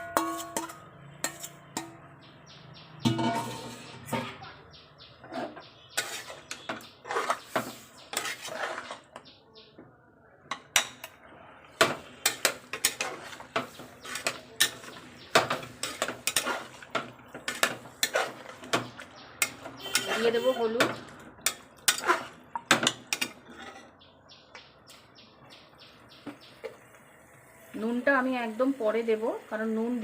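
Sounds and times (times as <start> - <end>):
metal utensils knocking on pot: 0.0 - 2.3, 2.9 - 4.4, 10.5 - 11.2, 11.8 - 23.9.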